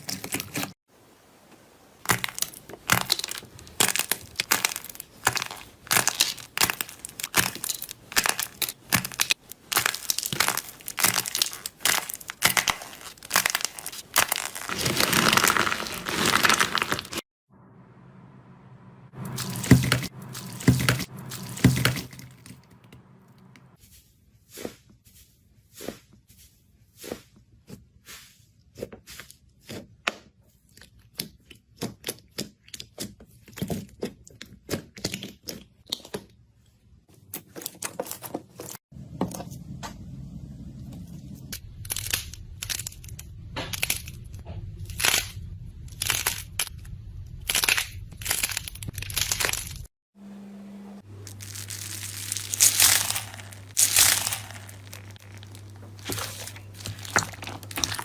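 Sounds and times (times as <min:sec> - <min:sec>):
sharp cracks and crunches: 0:02.0 - 0:17.3, 0:19.2 - 0:22.8, 0:41.5 - 0:49.9, 0:51.2 - 0:58.0
low hum: 0:17.5 - 0:23.8, 0:39.0 - 0:47.5.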